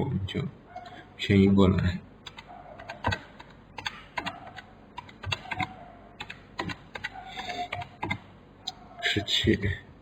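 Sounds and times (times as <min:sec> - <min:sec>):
keyboard typing: 0:02.2 - 0:08.3.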